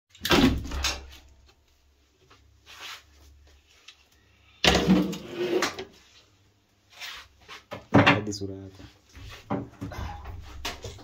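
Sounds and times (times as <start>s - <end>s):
objects knocking and rattling: 7.7s - 8.4s, 9.2s - 11.0s.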